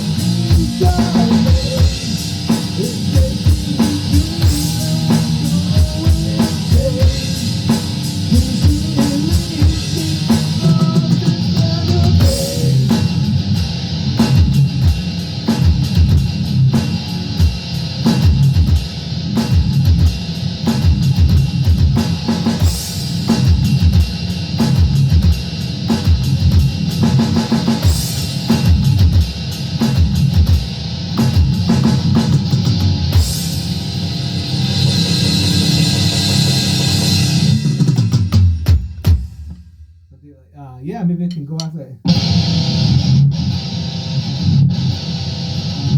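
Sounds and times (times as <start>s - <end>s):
electric guitar riff: 0.0s - 38.3s, 42.0s - 45.9s
drum kit beat: 0.0s - 40.2s, 41.1s - 44.4s.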